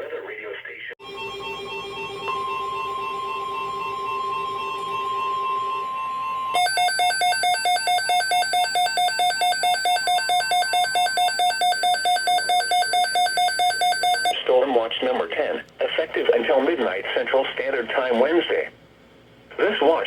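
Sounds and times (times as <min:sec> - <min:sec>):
steady warning alarm tone: 0:01.0 - 0:14.4
rapid electronic beeping: 0:06.6 - 0:14.4.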